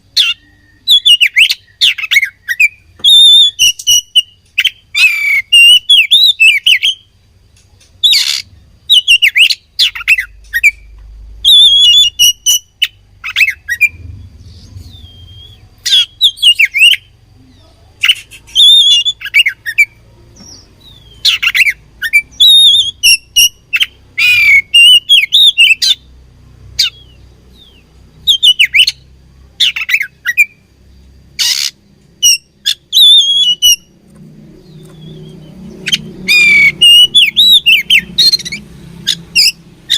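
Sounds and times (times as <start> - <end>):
bird singing whistled phrases: 0.2 - 7.1, 8.0 - 17.1, 18.0 - 26.0, 26.8 - 29.0, 31.4 - 33.9, 34.7 - 39.6
bird sharp chips: 18.0 - 26.0.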